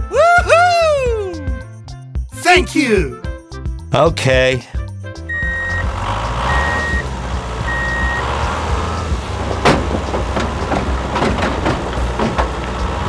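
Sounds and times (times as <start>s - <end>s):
diesel engine rumble: 5.3s - 13.0s
reversing beeps: 6.5s - 7.1s, 7.7s - 8.2s
sharp knock: 6.6s - 12.6s.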